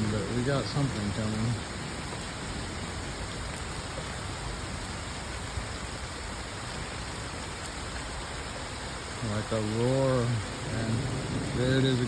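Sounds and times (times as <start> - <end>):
heavy rain: 0.0 - 12.0
strong wind: 8.1 - 12.0.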